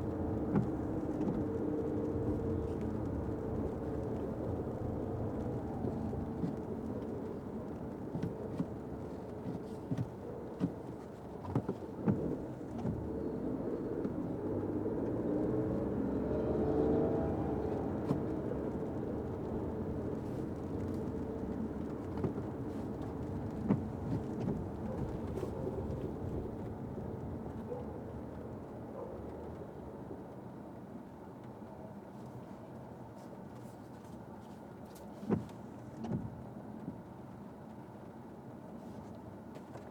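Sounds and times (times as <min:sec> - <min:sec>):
rain tapping on a car: 0:00.0 - 0:13.2, 0:17.5 - 0:28.7, 0:35.2 - 0:38.0
muffled road and engine noise: 0:00.0 - 0:39.9.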